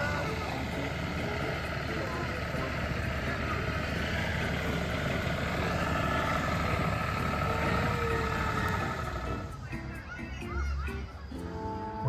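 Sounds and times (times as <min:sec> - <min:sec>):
faint steady whine: 0:00.0 - 0:09.6
engine rumbling: 0:00.0 - 0:12.0.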